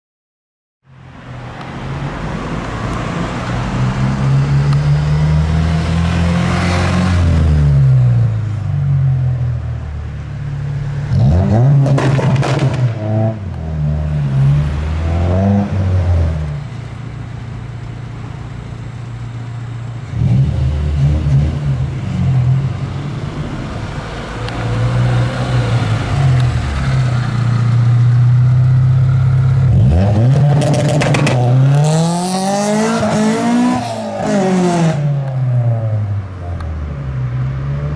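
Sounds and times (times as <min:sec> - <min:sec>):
car engine revving: 0:01.6 - 0:08.6, 0:10.4 - 0:37.9
sharp exhaust pops: 0:11.8 - 0:13.1.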